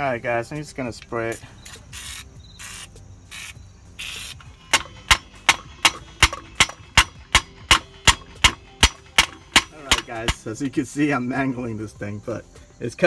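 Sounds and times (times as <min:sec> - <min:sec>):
aerosol can hissing: 0:01.3 - 0:04.6
hammer striking metal hub: 0:04.0 - 0:10.8.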